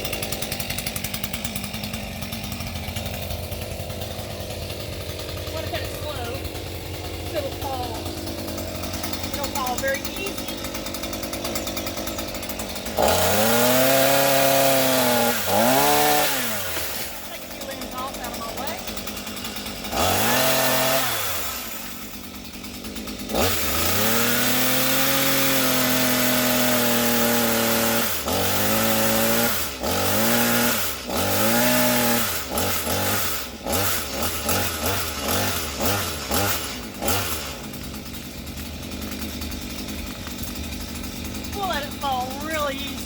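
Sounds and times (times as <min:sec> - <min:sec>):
chainsaw revving and cutting: 0:00.0 - 0:43.0.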